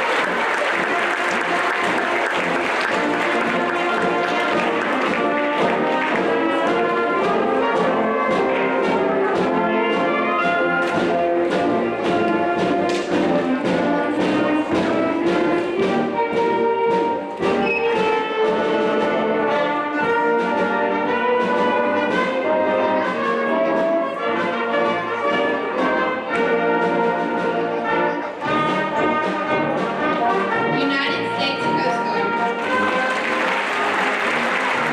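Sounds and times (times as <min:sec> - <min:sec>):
percussion hits: 0:00.0 - 0:19.3, 0:32.3 - 0:34.9
brass band playing: 0:00.0 - 0:34.9.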